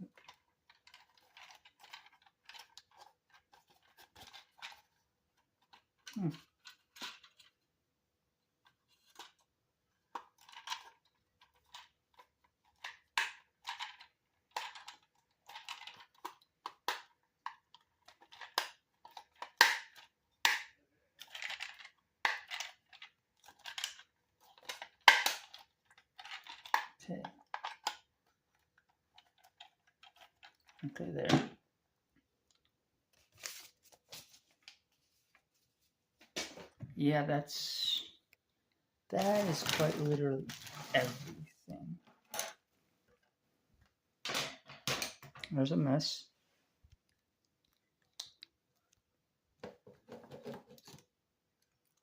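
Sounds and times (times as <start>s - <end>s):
toy packaging rustling: 0.0s - 7.7s, 8.6s - 20.4s, 21.1s - 31.2s, 32.5s - 36.4s, 38.8s - 43.3s.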